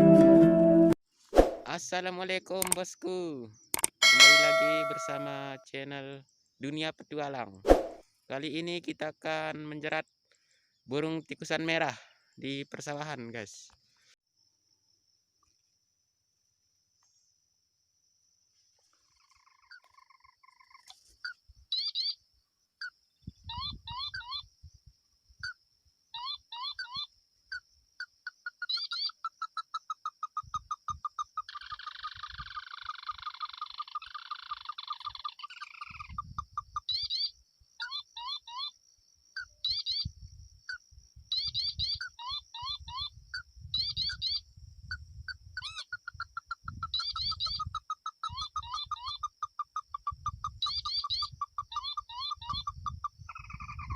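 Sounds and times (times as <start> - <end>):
animal calls with rapid sharp notes: 26.2 - 37.1.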